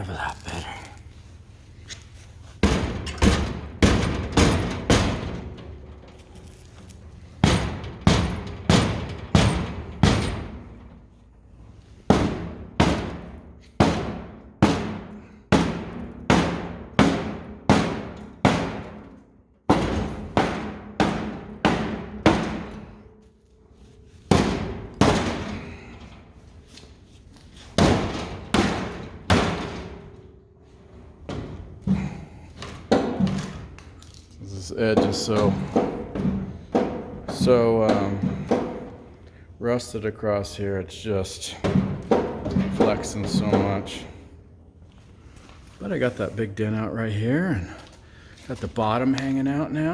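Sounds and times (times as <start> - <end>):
rubber hammer pounding sheet metal: 2.6 - 6.1, 7.4 - 11.1, 11.9 - 23.1, 24.2 - 26.2, 27.6 - 30.2, 31.3 - 33.8, 34.6 - 39.2, 41.4 - 44.3.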